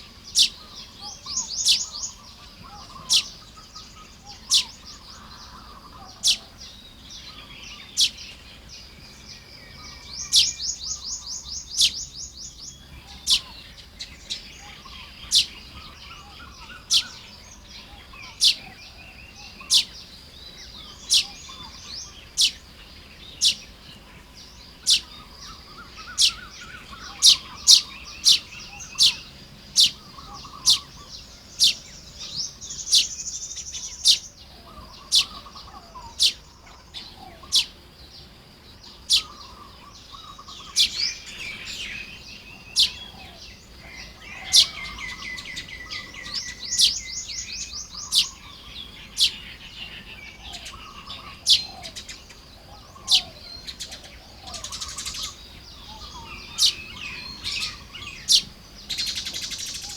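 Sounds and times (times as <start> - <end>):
soft bird twittering: 0.0 - 59.9
fast bird chattering: 0.3 - 6.6, 7.4 - 8.2, 13.1 - 16.0, 16.7 - 17.3, 18.2 - 18.8, 19.5 - 20.0, 20.9 - 22.6, 23.4 - 23.8, 24.6 - 37.8, 39.0 - 41.9, 42.6 - 43.3, 44.0 - 52.3, 52.9 - 59.9
wheezy bird buzz: 9.8 - 59.9.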